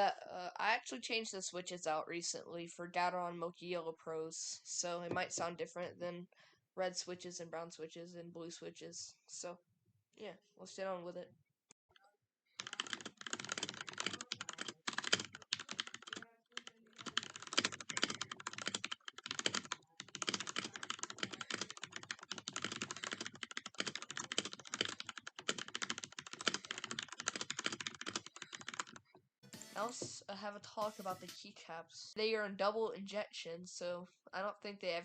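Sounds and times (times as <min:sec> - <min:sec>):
typing on mechanical keyboard: 0:12.6 - 0:29.0.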